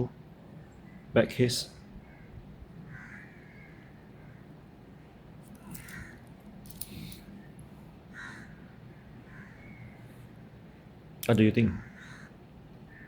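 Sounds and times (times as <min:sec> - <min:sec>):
crows cawing: 0:02.0 - 0:04.5, 0:05.6 - 0:06.3, 0:08.1 - 0:10.1, 0:11.7 - 0:13.0
wristwatch handling clicks: 0:05.5 - 0:07.3.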